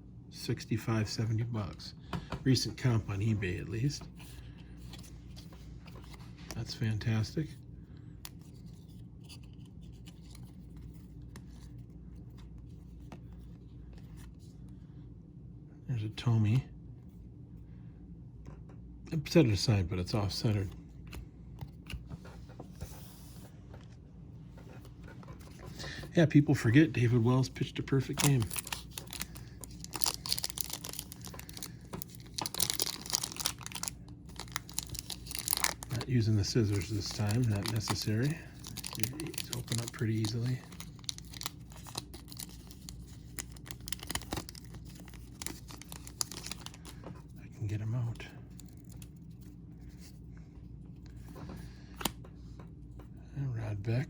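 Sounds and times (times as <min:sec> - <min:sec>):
steady low hum: 0:00.0 - 0:54.0
wrapper tearing and crinkling: 0:27.9 - 0:46.9.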